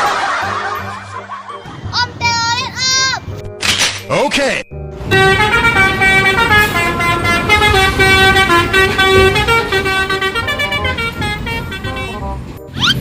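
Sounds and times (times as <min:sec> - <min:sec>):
musical air horns playing tune: 0:05.0 - 0:12.5.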